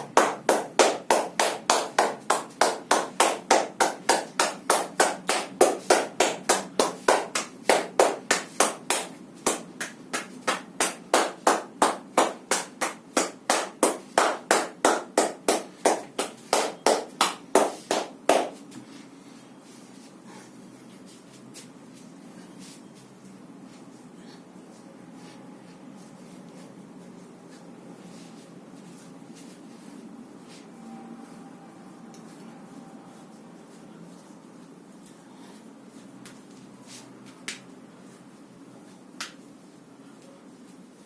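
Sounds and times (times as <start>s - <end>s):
hands slapping body rhythmically: 0.0s - 18.9s, 35.9s - 37.7s, 39.2s - 39.5s.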